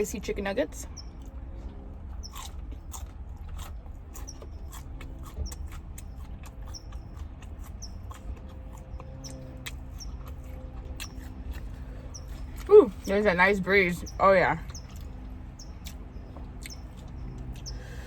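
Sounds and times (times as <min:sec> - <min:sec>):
steady low hum: 0:00.0 - 0:18.0
chewing with wet mouth clicks: 0:01.0 - 0:12.7, 0:14.0 - 0:18.0.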